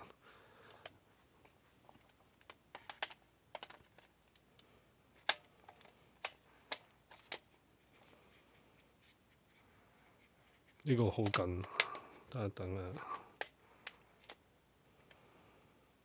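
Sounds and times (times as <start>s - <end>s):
light clicks of gun handling: 11.2s - 12.4s.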